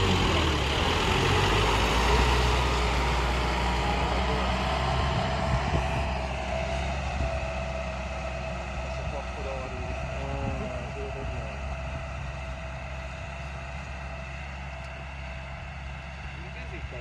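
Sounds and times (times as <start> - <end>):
tractor diesel engine running: 0.0 - 17.0.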